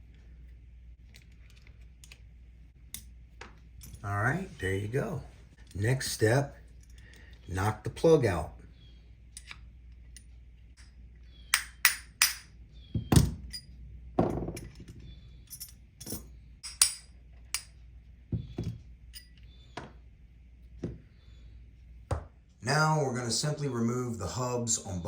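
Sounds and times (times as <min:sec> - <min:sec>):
hammer tapping metal punch: 0:11.5 - 0:13.7.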